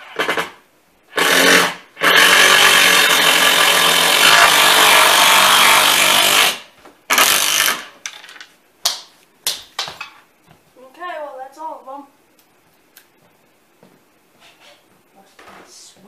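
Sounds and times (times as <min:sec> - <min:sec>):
impact driver driving screw into wood: 0:01.2 - 0:07.9.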